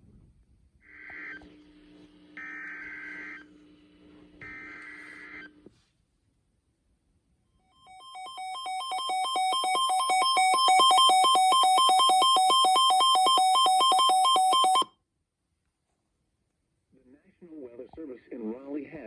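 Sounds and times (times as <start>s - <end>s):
electronic two-tone emergency alert: 7.8s - 14.9s.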